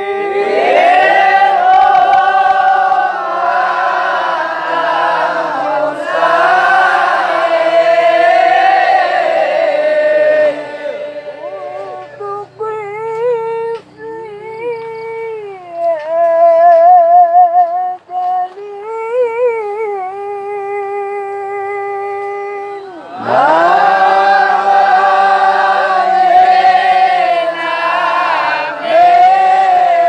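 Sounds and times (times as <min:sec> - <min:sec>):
group of voices singing: 0:00.0 - 0:15.0, 0:21.6 - 0:30.0
solo voice singing held notes: 0:00.0 - 0:30.0.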